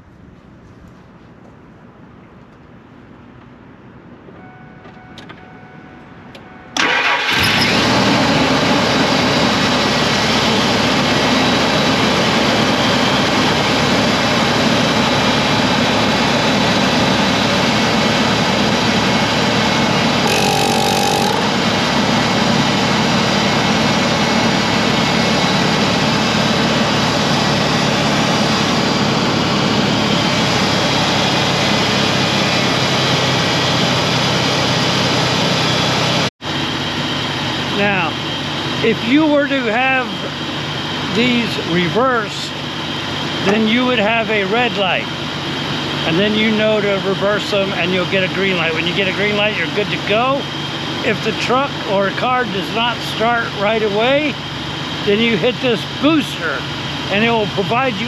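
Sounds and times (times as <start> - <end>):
truck engine starting and running: 0.0 - 58.0
brief high-pitched sound: 20.2 - 21.6.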